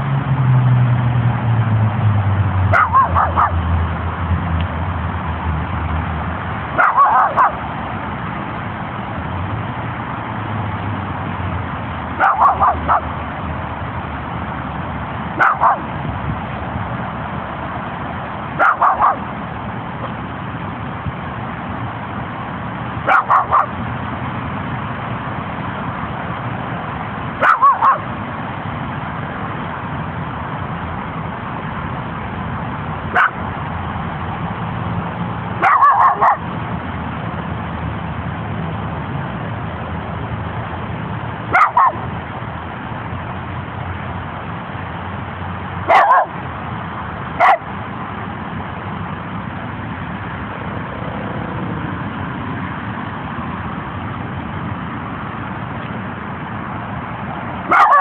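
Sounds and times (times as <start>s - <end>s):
small dog barking sharply: 2.7s - 3.6s, 6.8s - 7.6s, 12.2s - 13.1s, 15.4s - 15.9s, 18.6s - 19.2s, 23.1s - 23.7s, 27.4s - 28.1s, 33.2s - 33.4s, 35.6s - 36.4s, 41.5s - 42.0s, 45.9s - 46.3s, 47.4s - 47.6s, 57.7s - 58.0s.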